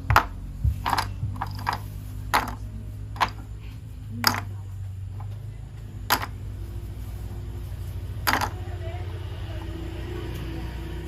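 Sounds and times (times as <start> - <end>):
low steady hum: 0.0 - 11.0
plastic toy pieces clicking: 4.2 - 4.5, 6.1 - 6.3, 8.3 - 8.6.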